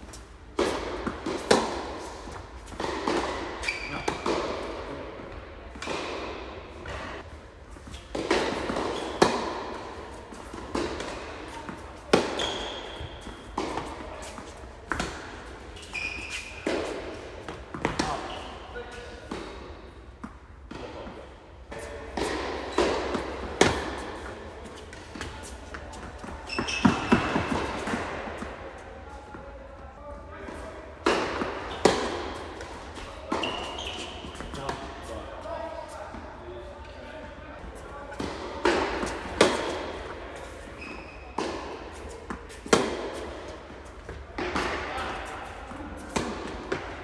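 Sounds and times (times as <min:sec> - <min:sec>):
tennis ball hits and bounces: 0:00.6 - 0:01.9, 0:08.0 - 0:09.8, 0:10.4 - 0:15.3, 0:22.1 - 0:25.3, 0:38.2 - 0:40.6, 0:41.4 - 0:45.3, 0:46.0 - 0:47.0.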